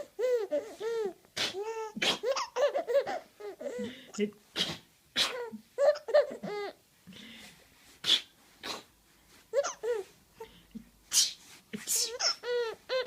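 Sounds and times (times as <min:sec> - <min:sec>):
baby laughing: 0:00.0 - 0:03.9, 0:05.3 - 0:06.8, 0:09.5 - 0:10.1, 0:12.0 - 0:13.0.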